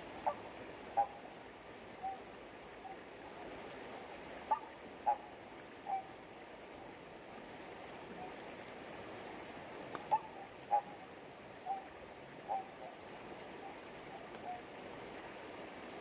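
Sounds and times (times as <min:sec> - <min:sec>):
bird calling: 0:00.0 - 0:06.2, 0:09.9 - 0:14.8
flowing water: 0:00.0 - 0:16.0.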